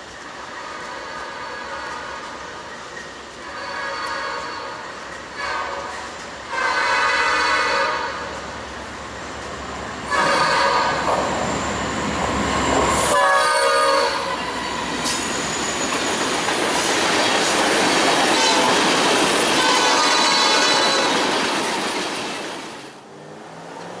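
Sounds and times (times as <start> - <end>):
train rolling along rails: 0.0 - 24.0
locomotive air horn blasts: 3.6 - 4.8, 5.4 - 8.3, 10.1 - 11.1, 13.0 - 14.5, 19.6 - 21.2.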